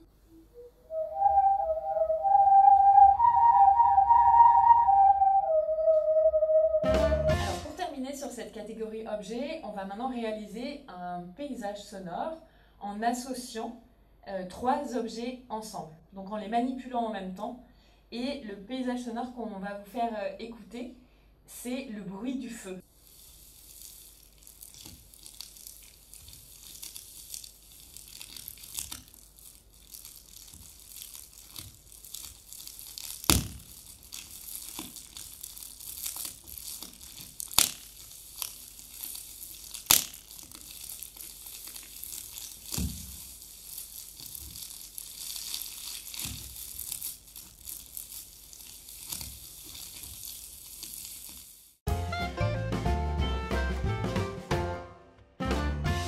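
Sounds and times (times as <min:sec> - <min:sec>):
fire crackling: 0:22.9 - 0:51.9.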